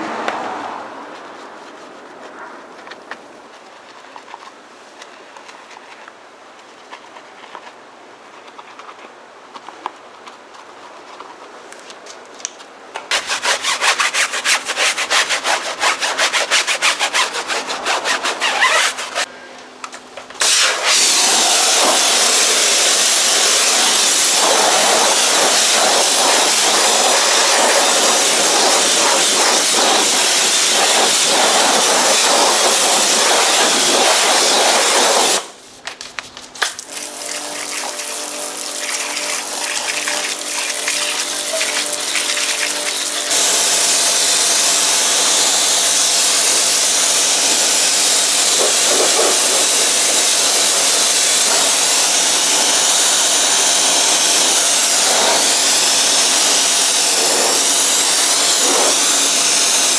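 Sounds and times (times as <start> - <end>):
brush scrubbing wheel: 13.1 - 19.3, 20.4 - 35.8, 36.9 - 59.9
pressure washer spraying water: 13.1 - 19.3, 20.4 - 35.6, 36.7 - 59.9
steady machine hum: 36.9 - 44.2.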